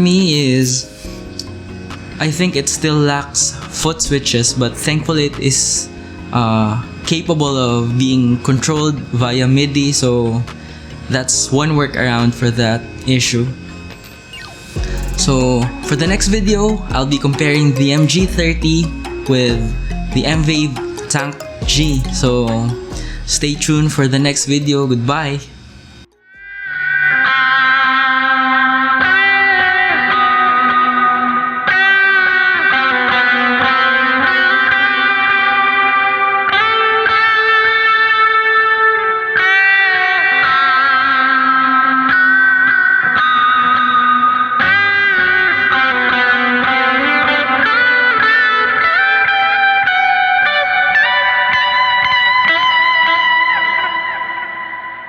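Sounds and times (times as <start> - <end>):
electric guitar sustained chords: 0.0 - 55.0.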